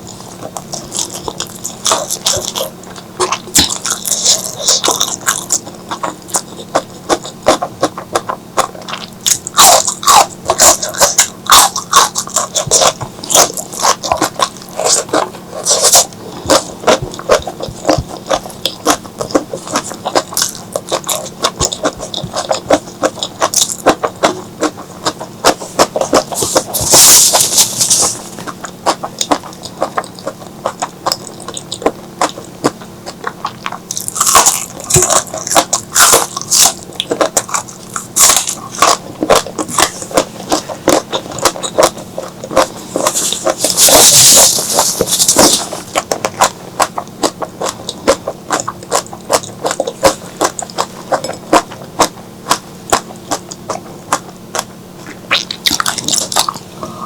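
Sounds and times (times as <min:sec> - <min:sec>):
wet chewing: 0:00.0 - 0:57.0.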